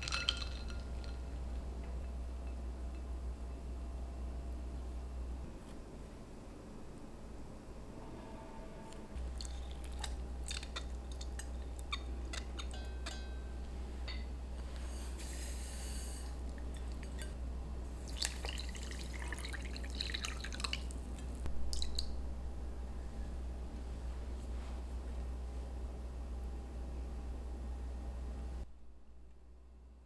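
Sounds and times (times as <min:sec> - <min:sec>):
steady low hum: 0:00.0 - 0:30.0
water drips: 0:09.2 - 0:13.2, 0:16.4 - 0:22.2.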